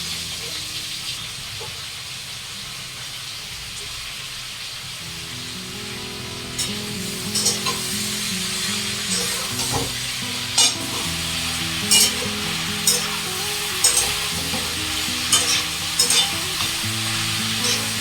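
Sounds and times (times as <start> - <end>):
vegetables sizzling in oil: 0.0 - 18.0
spatula scraping pan: 9.1 - 10.0, 11.8 - 18.0.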